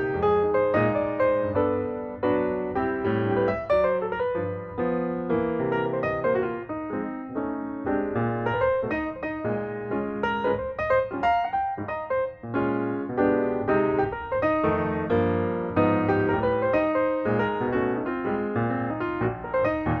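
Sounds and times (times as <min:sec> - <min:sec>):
piano music: 0:00.0 - 0:20.0.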